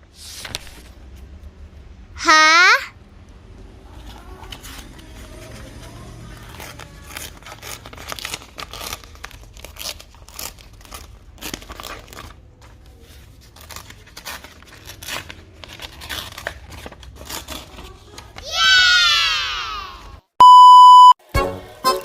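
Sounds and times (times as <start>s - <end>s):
paper tearing and crumpling: 0.2s - 0.9s, 4.0s - 18.4s.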